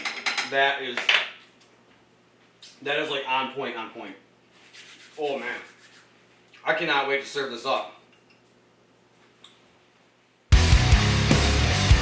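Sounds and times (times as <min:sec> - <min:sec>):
loud rock music: 0:10.5 - 0:12.0.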